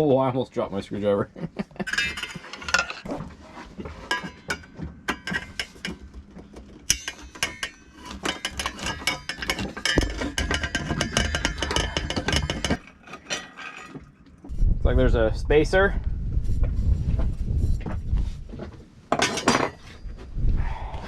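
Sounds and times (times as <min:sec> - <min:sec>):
metal parts clinking: 0:01.8 - 0:03.1, 0:06.9 - 0:14.0.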